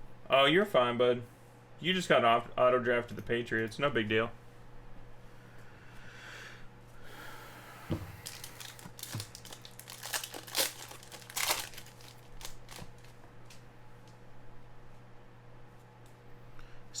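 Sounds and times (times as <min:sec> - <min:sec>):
soft thump: 0:07.9 - 0:08.2
foil wrapper tearing and crinkling: 0:08.2 - 0:13.6.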